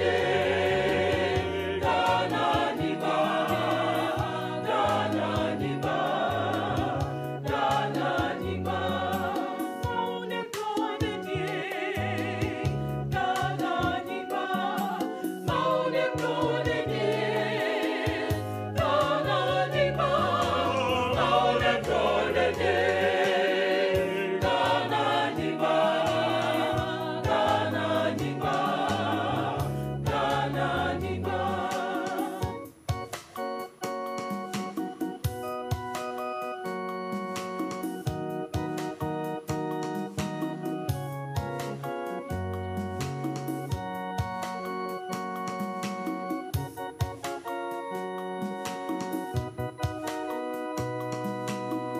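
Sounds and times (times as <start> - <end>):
choir singing gospel: 0.0 - 33.2
steady bass line: 18.5 - 23.2.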